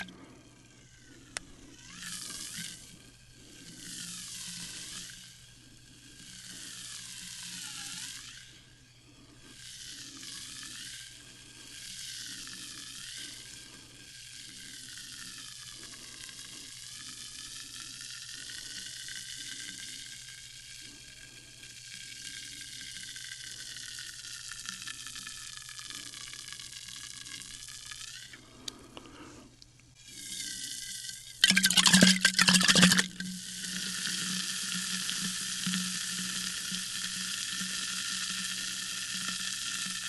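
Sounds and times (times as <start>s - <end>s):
steady low hum: 0.0s - 40.0s
sparkling water fizzing: 31.4s - 33.2s.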